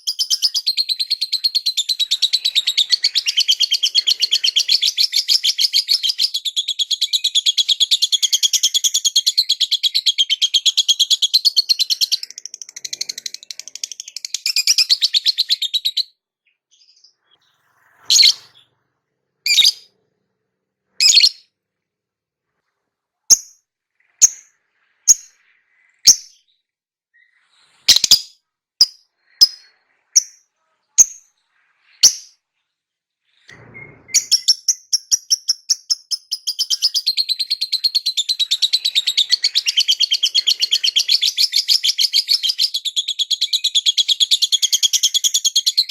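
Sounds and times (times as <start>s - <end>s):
lovebird chattering and chirping: 0.0s - 16.1s, 18.0s - 18.6s, 19.5s - 19.9s, 21.0s - 21.5s, 23.3s - 25.4s, 26.0s - 26.4s, 27.9s - 32.4s, 33.8s - 45.9s.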